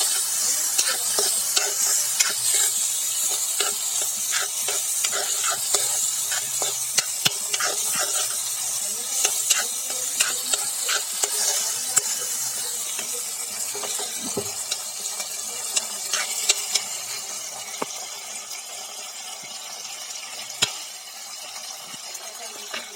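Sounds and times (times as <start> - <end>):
spoon scraping a pan: 0.0 - 18.0
food sizzling in a pan: 0.0 - 22.9.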